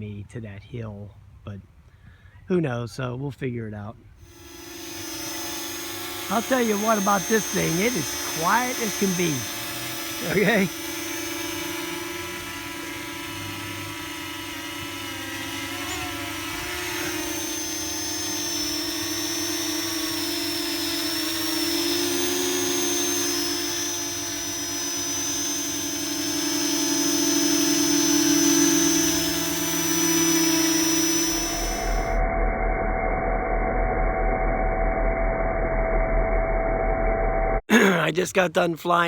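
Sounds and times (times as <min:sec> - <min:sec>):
drone propellers buzzing: 0:04.2 - 0:32.2.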